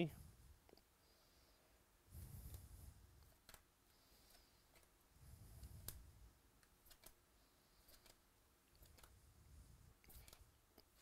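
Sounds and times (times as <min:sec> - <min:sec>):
trading cards clicking and rustling: 0:10.1 - 0:11.0.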